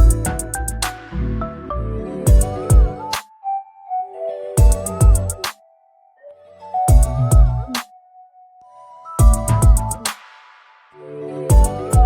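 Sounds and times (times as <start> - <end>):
heavy bass kicks: 0.0 - 0.6, 2.3 - 3.0, 4.6 - 5.3, 6.9 - 7.6, 9.2 - 10.0
sharp hi-hat hits: 0.0 - 1.1, 4.6 - 5.5
electronic music held tone: 0.0 - 10.4, 11.0 - 12.0.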